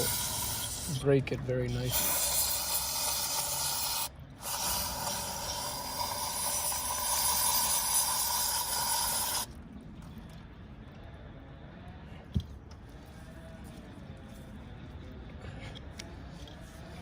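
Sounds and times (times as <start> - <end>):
pressurized spray hissing: 0.0 - 1.0, 1.8 - 9.5.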